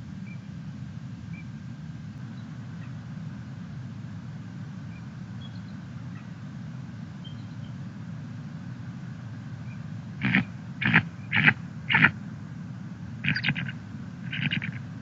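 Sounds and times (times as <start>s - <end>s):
microphone hum and hiss: 8.2s - 15.0s
sharp high bird calls: 9.7s - 12.1s, 13.2s - 14.9s
faint high chirps: 13.2s - 14.8s.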